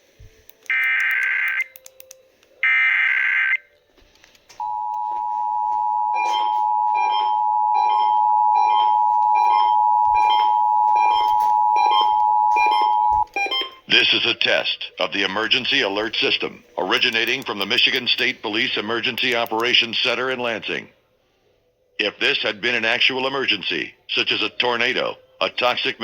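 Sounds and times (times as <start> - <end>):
repeating beep: 4.6 - 13.8
two-tone attention signal: 4.6 - 13.9.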